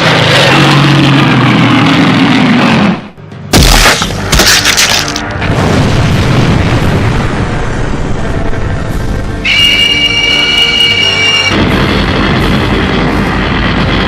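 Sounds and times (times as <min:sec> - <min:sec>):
rumbling noise: 0:00.0 - 0:09.4
music: 0:03.2 - 0:14.0
deep explosion boom: 0:05.4 - 0:08.2.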